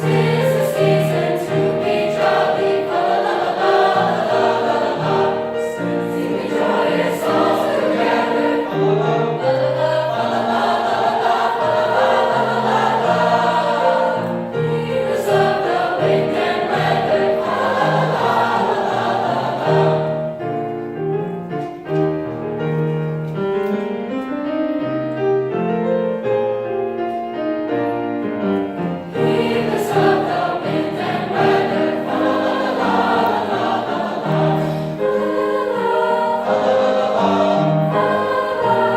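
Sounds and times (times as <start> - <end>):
choir singing: 0.0 - 20.6, 28.8 - 38.9.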